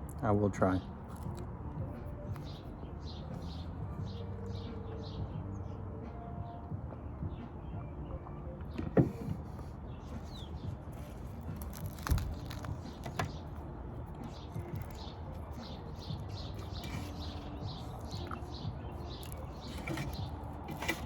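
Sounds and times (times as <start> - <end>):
chewing and wet mouth smacks: 1.0 - 1.5, 14.1 - 19.6.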